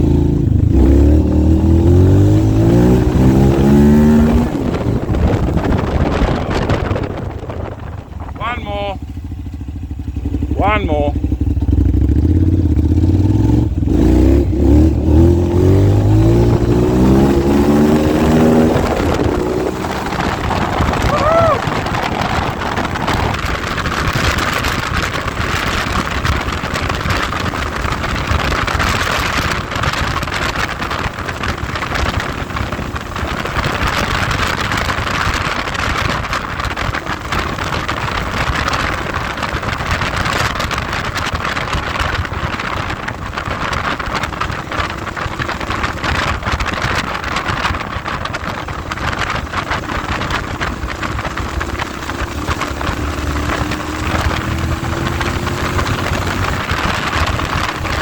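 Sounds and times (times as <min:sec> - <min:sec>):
wind buffeting microphone: 0:00.0 - 0:58.0.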